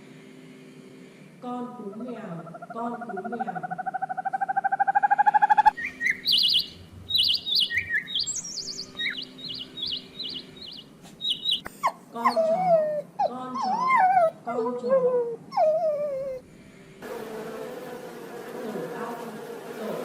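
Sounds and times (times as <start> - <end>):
songbird chirping trills: 1.8 - 15.2.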